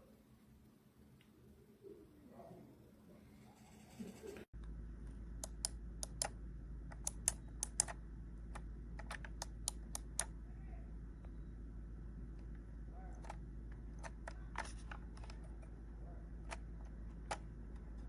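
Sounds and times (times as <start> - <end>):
steady low hum: 0.0 - 18.0
keypad keys clicking: 6.9 - 7.9.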